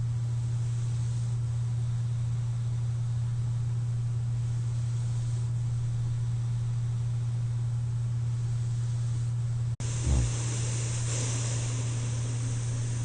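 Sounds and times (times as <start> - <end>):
cpap machine hum and hiss: 0.0 - 13.0
person snoring: 9.8 - 13.0.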